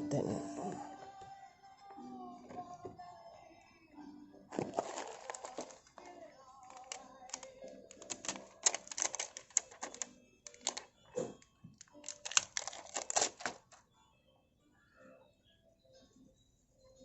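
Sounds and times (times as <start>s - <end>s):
small parts clicking and clattering: 4.6s - 10.9s, 11.8s - 13.8s.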